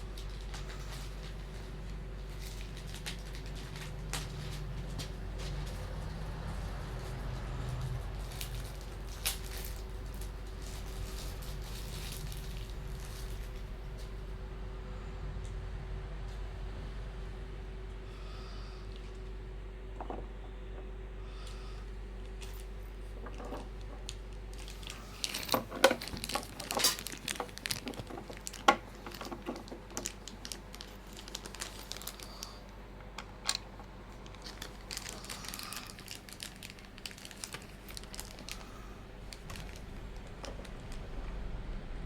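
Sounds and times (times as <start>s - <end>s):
packaging crinkling and clicking: 0.0s - 5.8s, 7.0s - 13.7s, 22.3s - 41.3s
faint low hum: 0.0s - 42.0s.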